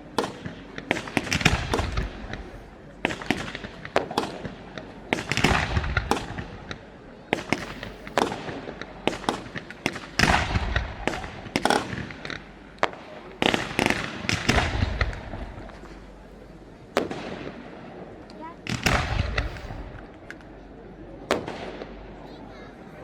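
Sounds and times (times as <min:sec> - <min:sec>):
fireworks bangs: 0:00.0 - 0:16.3, 0:16.9 - 0:20.6, 0:21.2 - 0:22.4.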